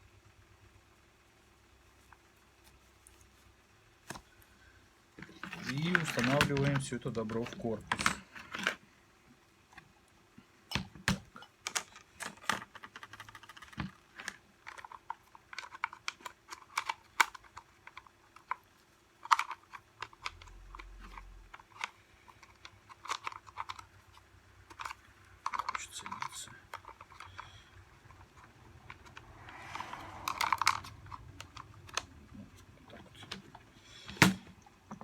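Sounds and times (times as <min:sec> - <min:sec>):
small clicks and knocks of tool parts: 0:05.2 - 0:08.8, 0:10.7 - 0:18.6, 0:19.2 - 0:32.1.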